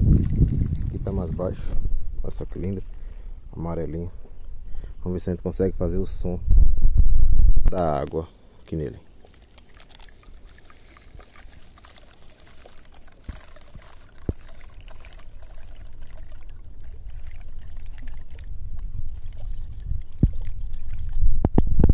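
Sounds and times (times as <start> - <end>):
water-like pouring and trickling: 0.0 - 1.8, 8.6 - 21.4.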